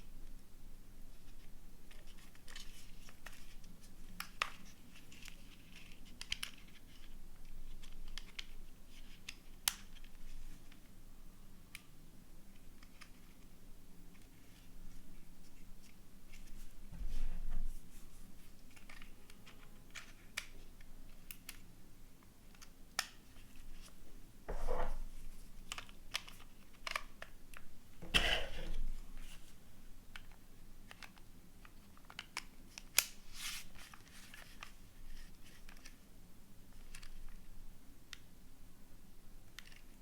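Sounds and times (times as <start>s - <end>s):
rustling scrapes: 24.5s - 25.4s, 28.0s - 29.6s.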